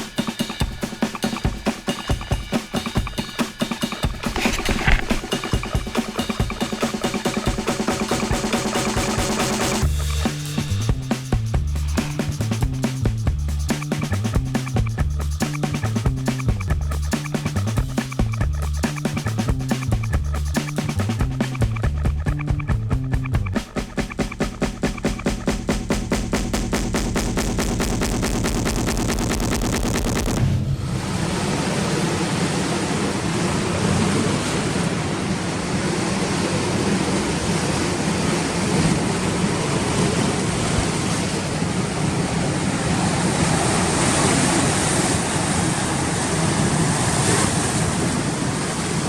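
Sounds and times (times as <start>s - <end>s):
music with fast beat: 0.0s - 30.4s
rough sea surf: 30.3s - 49.0s.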